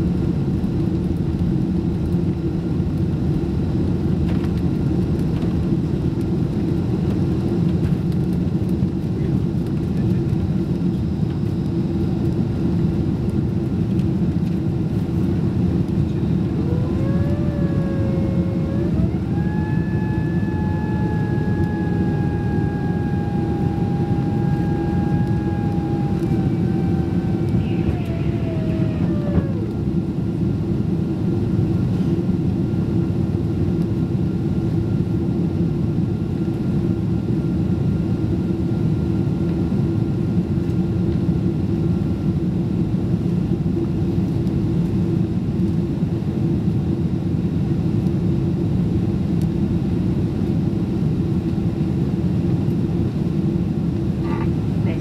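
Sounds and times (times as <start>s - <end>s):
jet engine cabin drone: 0.0s - 55.0s
rising and falling whine: 15.7s - 30.9s.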